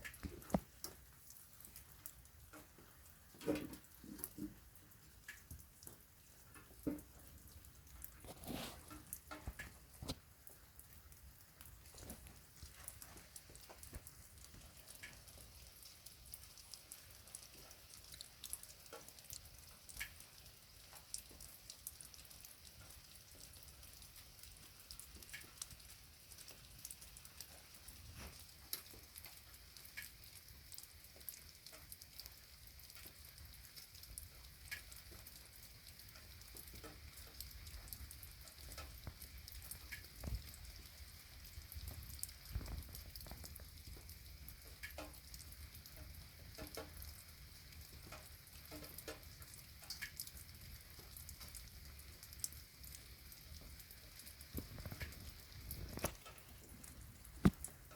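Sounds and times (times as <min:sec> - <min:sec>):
rain falling: 0:00.0 - 0:57.9
drops ticking on hard surface: 0:08.8 - 0:57.9
heavy low drips thudding: 0:54.6 - 0:57.9.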